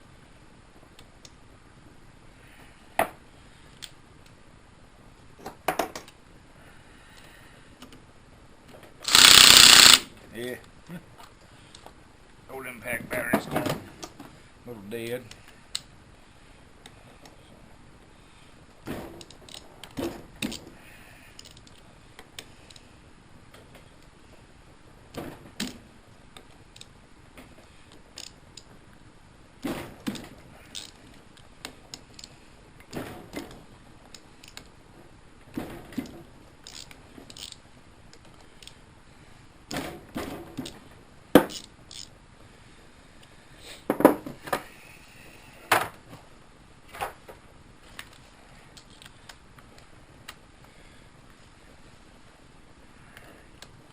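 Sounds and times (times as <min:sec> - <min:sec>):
tools and metal parts clinking: 0:36.6 - 0:37.6, 0:41.5 - 0:42.1.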